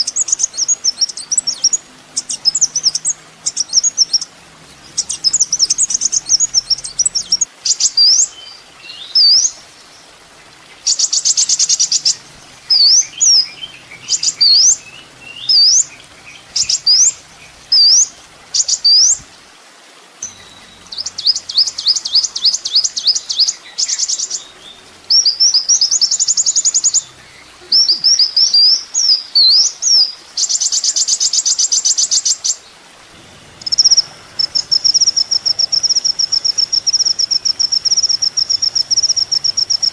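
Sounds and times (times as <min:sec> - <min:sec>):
buzzy bird trills: 0:00.0 - 0:09.6, 0:10.7 - 0:19.2, 0:20.2 - 0:32.7, 0:33.4 - 0:39.9
sunbird whistled song: 0:04.9 - 0:10.0, 0:10.8 - 0:19.2, 0:20.2 - 0:32.8.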